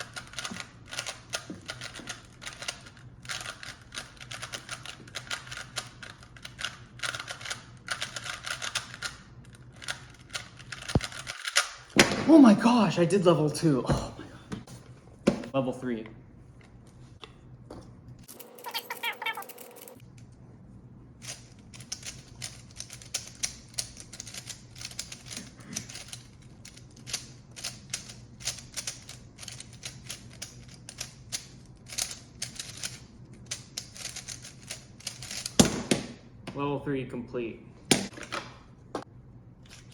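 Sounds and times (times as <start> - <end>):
puzzle cube clicking: 0.0 - 9.2, 9.8 - 11.9.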